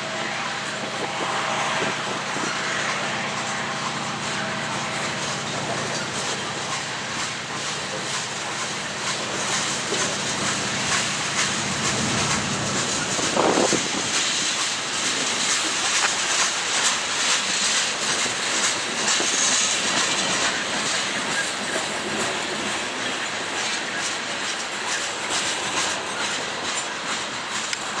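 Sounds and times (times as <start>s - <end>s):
train wheels rumbling on rail: 0.0s - 28.0s
low engine hum: 2.1s - 14.1s
wheels clicking over rail joints: 4.9s - 20.6s.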